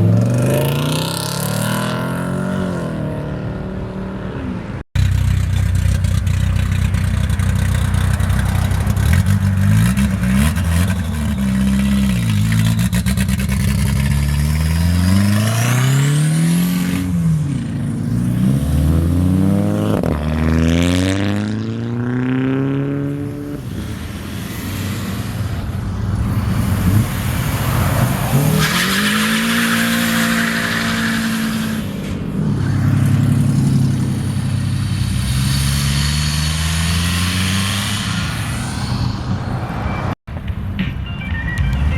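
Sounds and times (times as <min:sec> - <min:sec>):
car engine revving and accelerating: 0:00.0 - 0:04.7, 0:07.5 - 0:23.8, 0:26.4 - 0:39.1.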